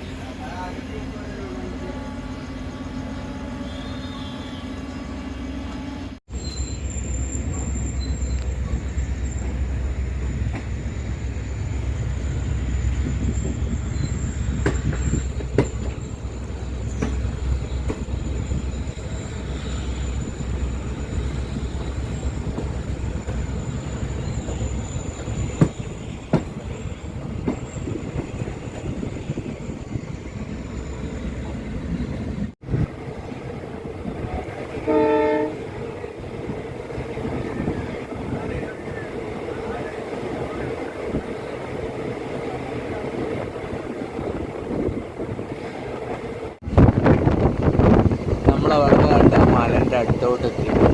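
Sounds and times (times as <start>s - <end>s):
train rumbling on rails: 0.0s - 50.9s
short train horn blast: 3.3s - 6.8s, 34.7s - 35.7s.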